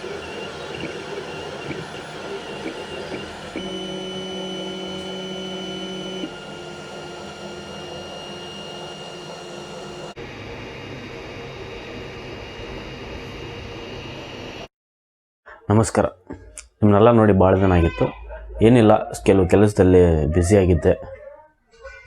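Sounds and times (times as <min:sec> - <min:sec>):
three d printer motor whine: 0:00.0 - 0:14.7.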